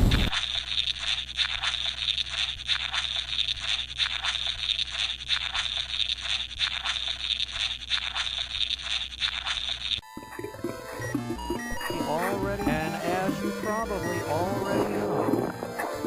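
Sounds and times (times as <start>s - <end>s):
crackling hissing static: 0.0s - 16.0s.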